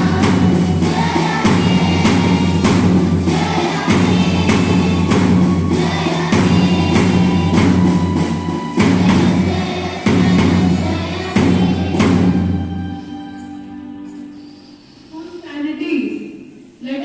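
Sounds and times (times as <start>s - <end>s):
students singing together: 0.0s - 13.0s
drum strikes: 0.0s - 13.5s.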